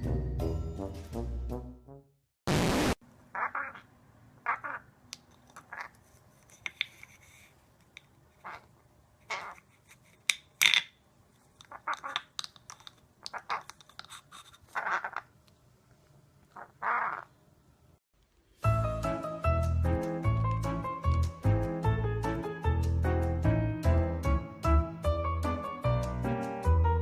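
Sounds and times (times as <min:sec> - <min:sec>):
parrot harsh calls: 0:03.3 - 0:04.9, 0:08.4 - 0:08.7, 0:09.3 - 0:09.6, 0:14.7 - 0:15.3, 0:16.6 - 0:17.3.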